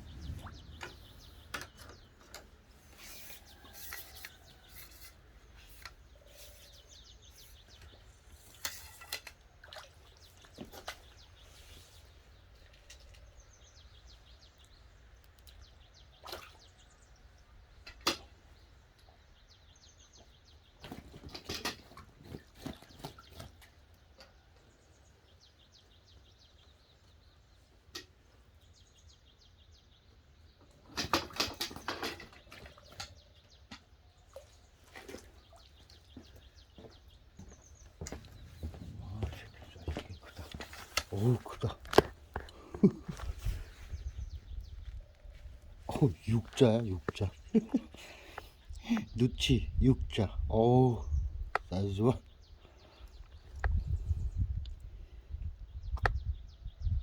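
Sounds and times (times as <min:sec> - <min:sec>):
wind rumble on microphone: 0:00.0 - 0:01.6, 0:43.2 - 0:45.9, 0:48.7 - 0:52.5, 0:53.1 - 0:57.0.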